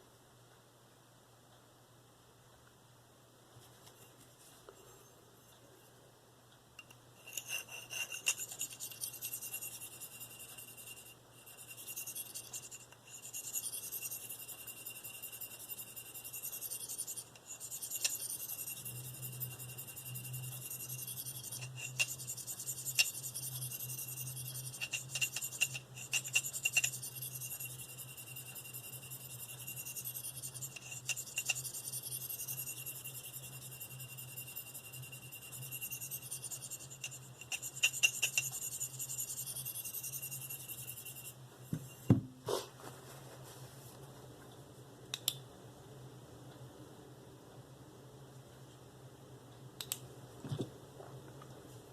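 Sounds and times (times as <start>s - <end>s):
knife scraping on ceramic stone: 6.8s - 42.2s.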